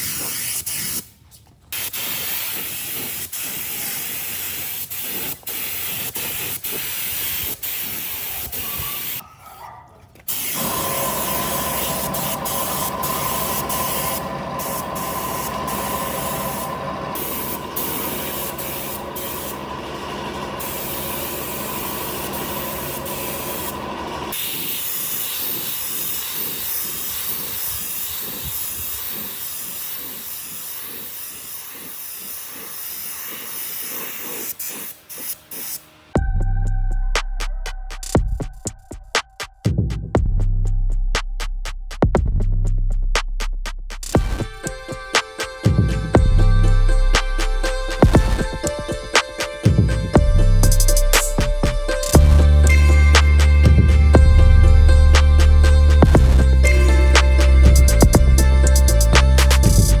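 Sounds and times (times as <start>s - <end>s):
compressed air hiss: 0.0s - 9.2s, 10.3s - 35.8s
steady machine hum: 10.3s - 29.3s, 44.2s - 60.0s.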